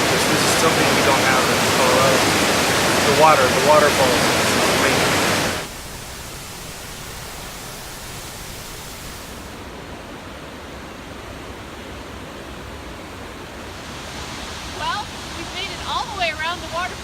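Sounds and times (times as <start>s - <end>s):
river water rushing: 0.0s - 10.0s
loud water rush: 0.0s - 10.7s, 12.9s - 17.0s.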